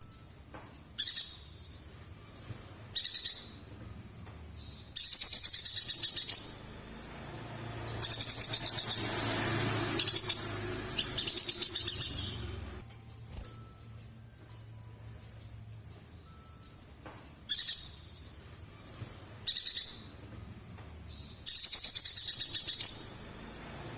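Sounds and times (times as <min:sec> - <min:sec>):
bird singing rapid high notes: 0:00.0 - 0:13.8, 0:16.2 - 0:20.2, 0:21.0 - 0:23.9.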